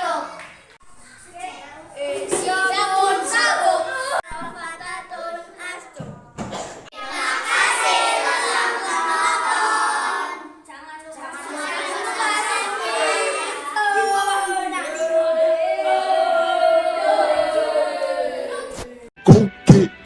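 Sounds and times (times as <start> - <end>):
children singing: 7.0 - 10.6, 11.3 - 19.1.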